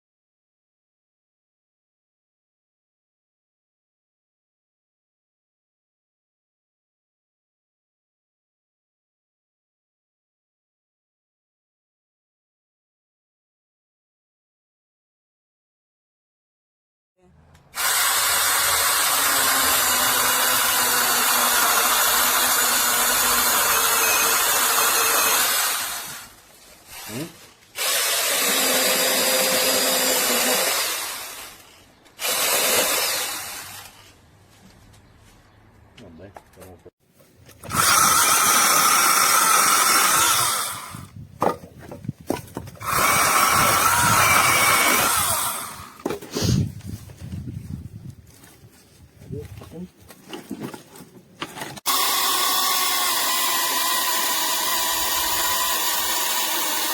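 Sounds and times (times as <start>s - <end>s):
mini chainsaw running: 17.7s - 26.3s, 26.9s - 31.6s, 32.2s - 34.0s, 37.6s - 41.1s, 42.8s - 46.0s, 51.8s - 56.9s.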